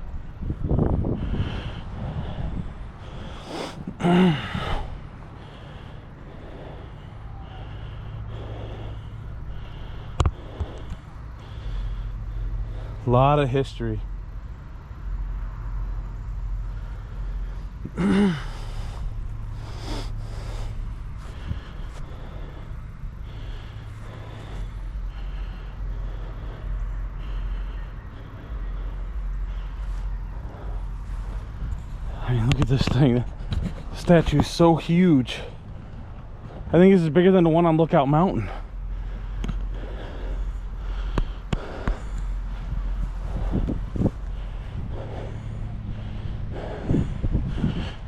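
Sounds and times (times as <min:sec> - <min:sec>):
low hum: 0:00.0 - 0:48.0
low outdoor rumble: 0:00.0 - 0:48.0
person breathing heavily: 0:00.1 - 0:48.0
person sighing or grunting: 0:03.9 - 0:04.9, 0:17.9 - 0:18.7.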